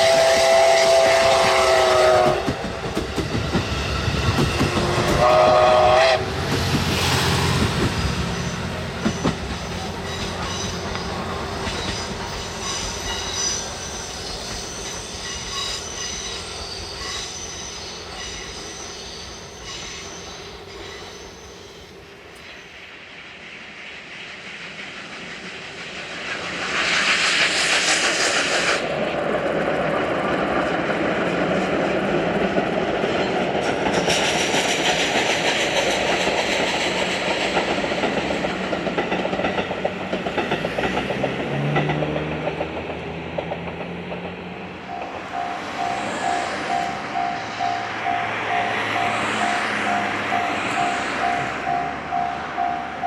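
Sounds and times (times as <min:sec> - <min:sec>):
strong hiss: 0:00.0 - 0:29.3
train running on rails: 0:00.0 - 0:53.0
wheel squeal: 0:07.6 - 0:22.7.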